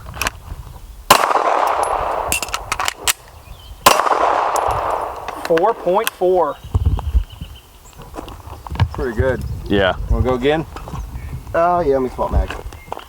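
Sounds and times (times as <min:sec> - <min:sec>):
handgun shots with echo: 0:01.1 - 0:06.2.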